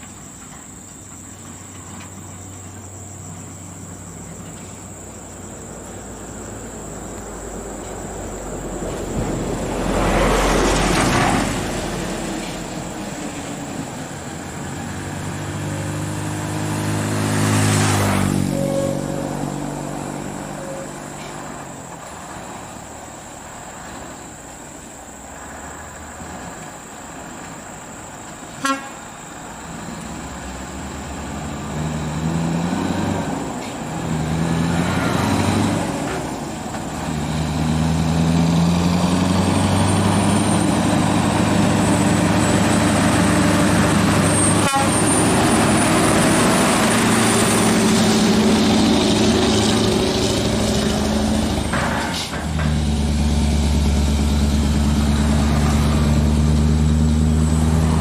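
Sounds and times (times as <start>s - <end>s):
diesel truck engine pulling: 0.0s - 58.0s
short truck horn toot: 18.3s - 19.5s, 20.5s - 21.4s, 28.6s - 29.0s, 44.4s - 45.4s.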